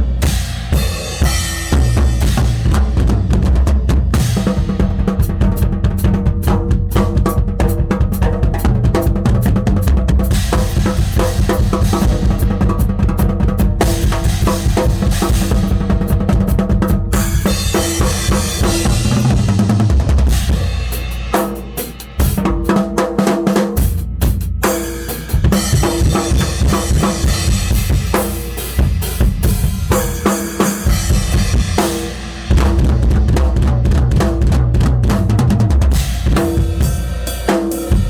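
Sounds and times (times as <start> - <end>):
bass drum: 0.0 - 38.0
snare drum: 1.2 - 36.9.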